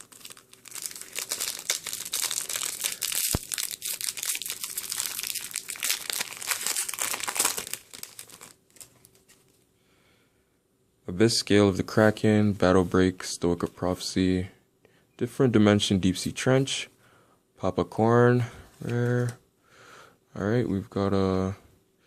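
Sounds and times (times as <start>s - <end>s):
foil wrapper crinkling and tearing: 0.0s - 9.6s.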